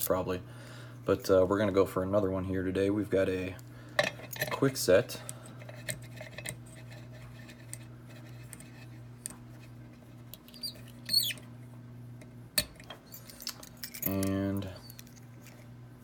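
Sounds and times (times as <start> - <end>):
low electrical hum: 0.0 - 16.0
brief high squeak: 10.6 - 11.4.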